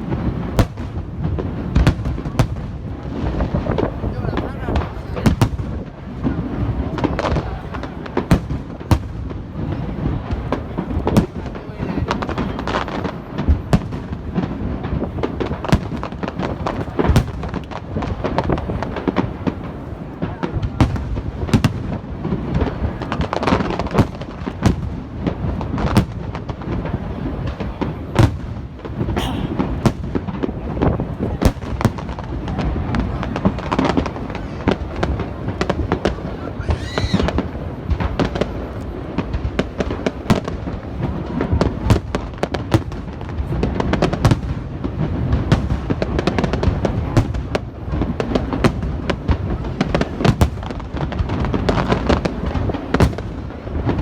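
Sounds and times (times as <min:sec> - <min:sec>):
fireworks bangs and crackles: 0:00.0 - 0:54.0
firework whistle: 0:36.4 - 0:37.4.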